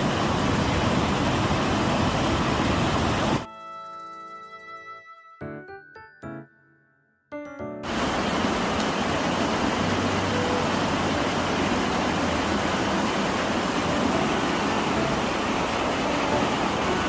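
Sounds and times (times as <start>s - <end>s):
stream rushing over rocks: 0.0s - 3.4s, 7.9s - 17.0s.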